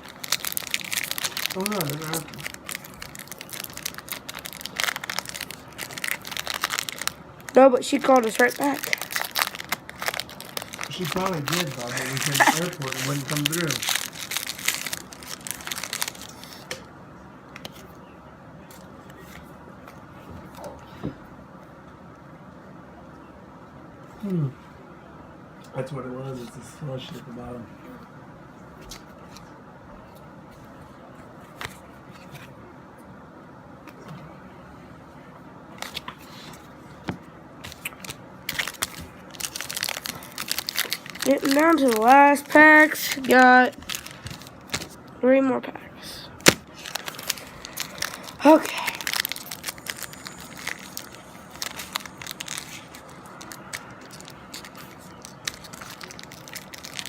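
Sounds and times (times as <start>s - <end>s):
foil wrapper crinkling: 0.0s - 16.8s, 37.6s - 45.2s, 46.4s - 57.0s
room hum: 0.0s - 57.0s
trading cards clicking and rustling: 10.0s - 15.0s.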